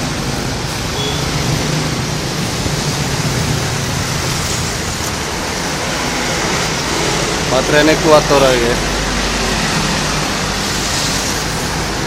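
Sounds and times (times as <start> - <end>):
bus engine idling: 0.0 - 12.0.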